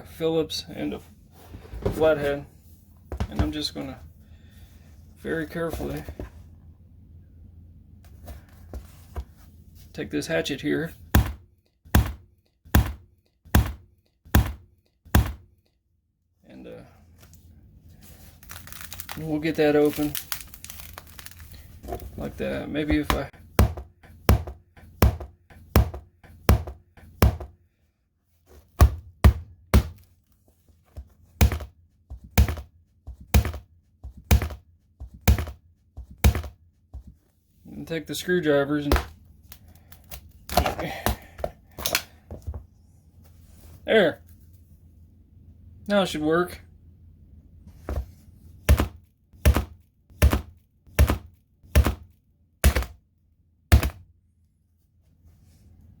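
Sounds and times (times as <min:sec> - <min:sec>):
hatchet chopping: 0:11.1 - 0:15.5, 0:23.0 - 0:27.6, 0:28.8 - 0:30.0, 0:31.4 - 0:31.7, 0:32.3 - 0:36.6, 0:48.7 - 0:53.0, 0:53.7 - 0:54.0.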